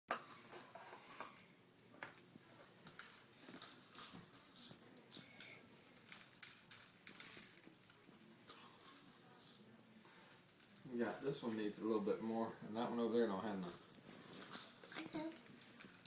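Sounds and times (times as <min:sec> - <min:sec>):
sprinkles rattling in a shaker: 0:02.8 - 0:11.5, 0:13.4 - 0:16.0.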